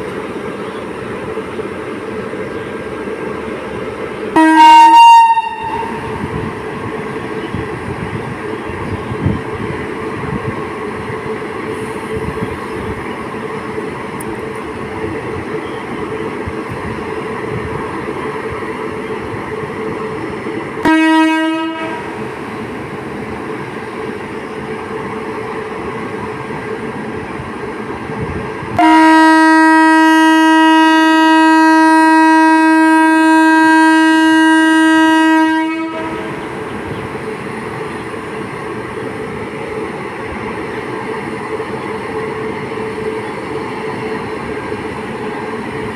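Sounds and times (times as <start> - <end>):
train running noise: 0.0 - 45.9
locomotive horn blasts: 4.4 - 6.2, 20.8 - 22.1, 28.8 - 36.4.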